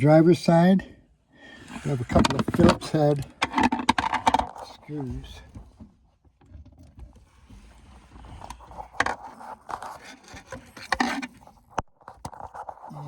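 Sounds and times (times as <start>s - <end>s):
screwdriver on plastic console: 8.4s - 12.9s.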